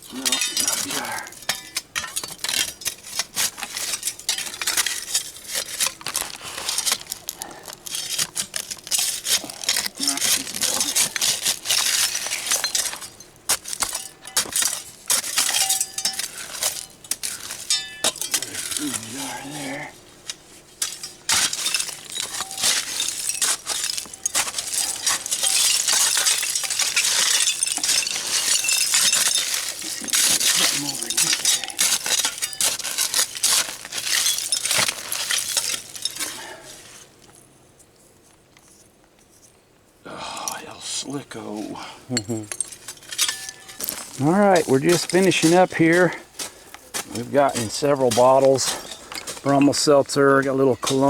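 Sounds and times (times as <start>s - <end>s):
digging scrapes and crunches: 0.0s - 39.6s, 40.2s - 51.0s
glass clinking: 0.2s - 2.9s, 15.4s - 18.7s, 20.8s - 33.2s, 42.1s - 44.1s.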